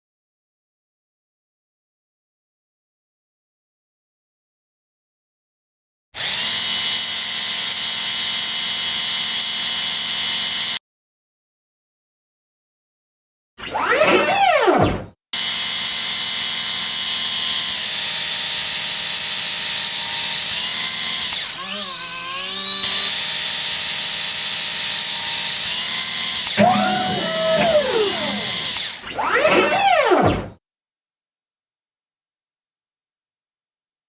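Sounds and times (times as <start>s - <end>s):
motorised whir: 13.7s - 30.6s
falling whine sweep: 26.6s - 29.0s
rising and falling whines: 26.6s - 30.5s.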